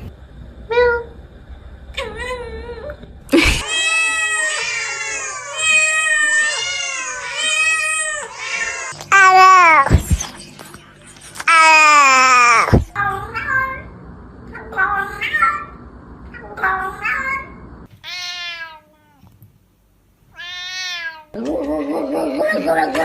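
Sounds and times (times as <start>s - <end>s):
cat meowing: 20.3s - 21.3s.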